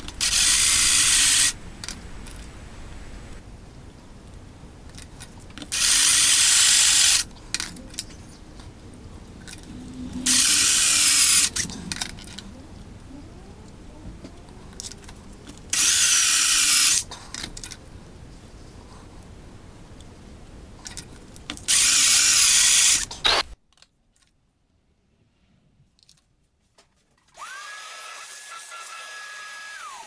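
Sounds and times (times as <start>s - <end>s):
power drill drilling sheet metal: 0.0s - 3.4s, 5.7s - 7.2s, 10.2s - 11.7s, 21.7s - 23.4s, 27.4s - 30.0s.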